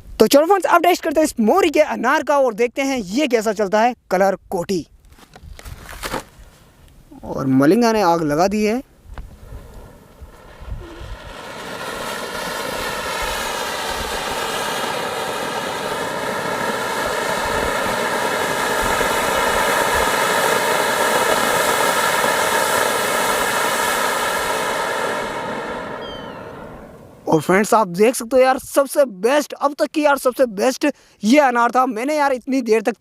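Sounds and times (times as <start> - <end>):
fountain firework hissing: 9.0 - 27.4.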